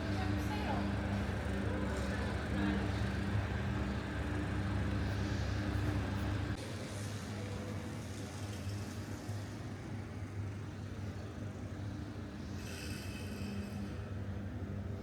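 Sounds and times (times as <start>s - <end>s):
vehicle engine hum: 0.0s - 6.6s
background traffic: 0.0s - 7.1s.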